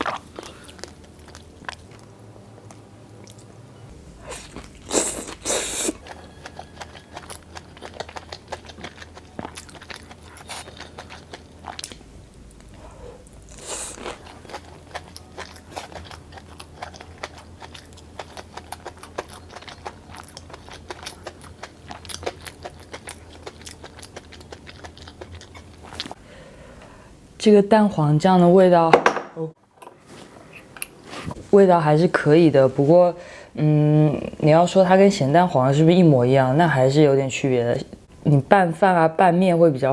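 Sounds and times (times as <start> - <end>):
person chewing and crunching food: 0.0 - 26.2.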